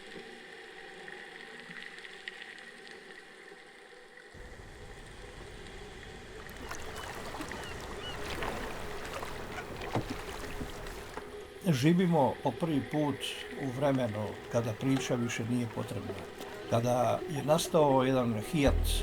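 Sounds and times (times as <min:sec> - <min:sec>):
deep water rush: 0:04.3 - 0:19.0
water sloshing and lapping: 0:04.8 - 0:18.9.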